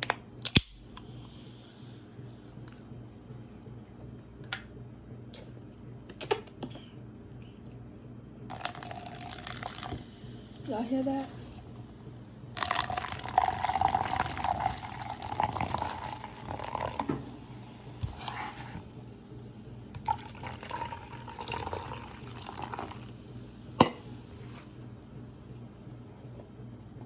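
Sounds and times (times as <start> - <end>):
soda pouring and fizzing: 8.5 - 11.9, 12.5 - 18.7, 20.0 - 23.2.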